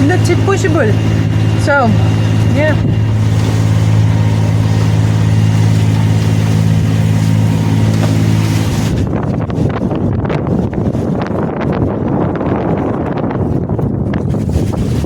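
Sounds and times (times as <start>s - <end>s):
boat engine running: 0.0s - 15.0s
sea noise: 0.0s - 15.0s
wind buffeting microphone: 0.0s - 15.0s.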